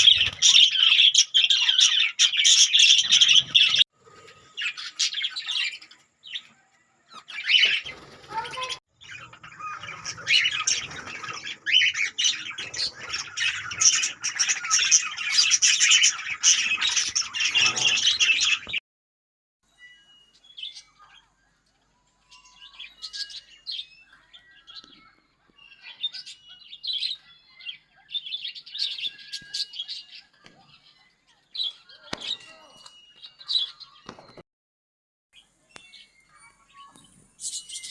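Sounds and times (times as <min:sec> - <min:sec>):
parrots chattering and squawking: 0:00.0 - 0:18.8.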